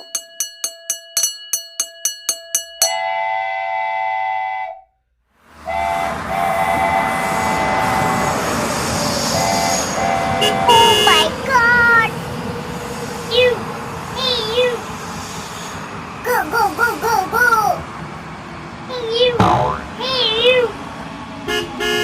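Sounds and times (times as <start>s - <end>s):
rhythmic ticking: 0.0s - 2.9s
train horn: 2.9s - 4.8s, 5.6s - 8.6s, 9.2s - 11.4s, 21.5s - 22.0s
train rumbling: 5.5s - 22.0s.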